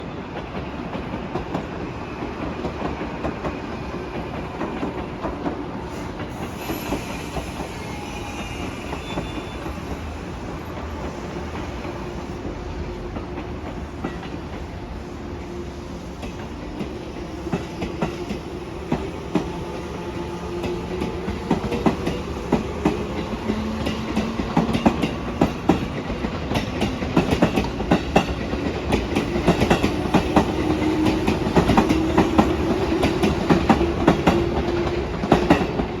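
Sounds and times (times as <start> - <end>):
train rumble: 0.0 - 36.0
train wheels clattering over rail joints: 16.2 - 36.0.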